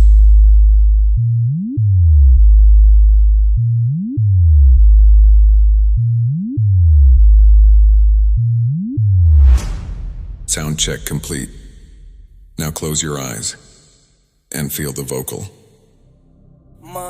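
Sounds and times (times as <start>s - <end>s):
deep synthesized sub-bass tone: 0.0s - 13.1s, 15.8s - 17.0s
rising bass sweep: 6.9s - 12.6s.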